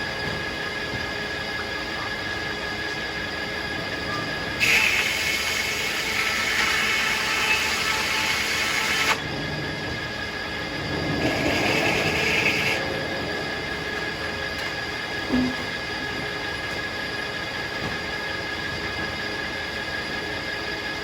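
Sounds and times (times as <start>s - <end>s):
sawmill blade spinning: 10.8s - 16.2s.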